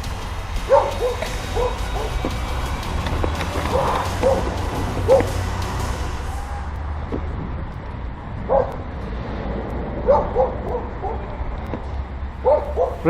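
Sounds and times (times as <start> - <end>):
steady low rumble: 0.0 - 13.0
dog barking: 0.7 - 2.1, 3.7 - 4.5, 5.1 - 5.3, 8.5 - 8.8, 10.0 - 11.2, 12.4 - 13.0.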